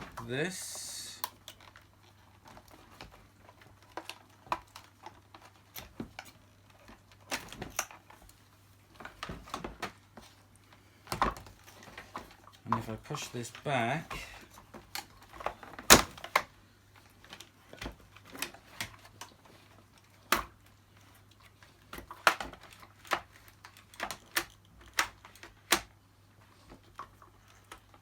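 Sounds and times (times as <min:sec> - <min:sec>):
plastic parts clicking: 0:00.8 - 0:08.1, 0:21.9 - 0:25.9.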